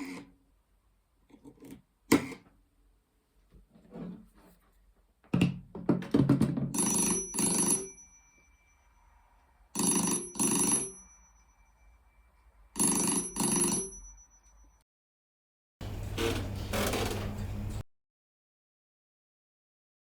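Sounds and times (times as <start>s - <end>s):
telephone bell double rings: 6.8s - 9.2s, 9.8s - 12.2s, 12.8s - 14.8s.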